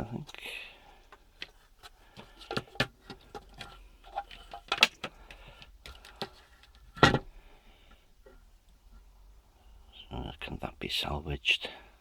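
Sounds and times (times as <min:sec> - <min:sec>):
hard parts clicking and knocking: 0:01.1 - 0:07.3.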